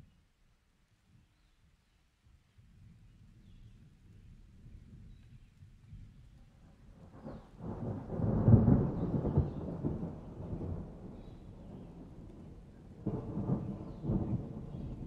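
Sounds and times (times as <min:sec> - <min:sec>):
rain falling: 0:07.0 - 0:15.0
thunder rumbling: 0:07.0 - 0:15.0.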